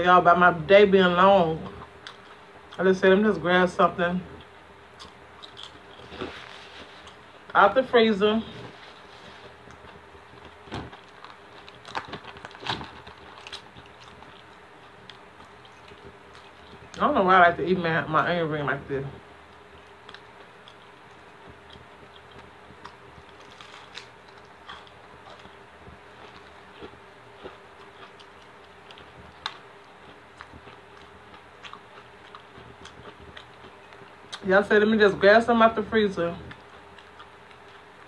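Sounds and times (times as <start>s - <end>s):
steady faint hum: 0.0s - 38.0s
person chewing: 1.6s - 2.8s, 4.3s - 7.3s, 8.5s - 17.0s, 19.5s - 34.4s, 36.4s - 38.0s
crunchy onion ring crunching: 4.3s - 7.5s, 8.5s - 17.0s, 19.5s - 34.5s, 36.3s - 38.0s.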